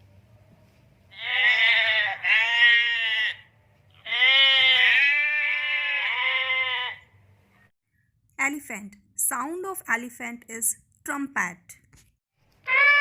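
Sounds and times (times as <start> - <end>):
sheep bleating: 1.1 - 7.1, 12.6 - 13.0.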